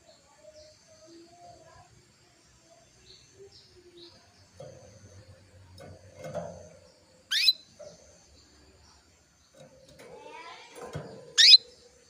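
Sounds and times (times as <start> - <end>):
canary chirps: 0.0 - 12.0.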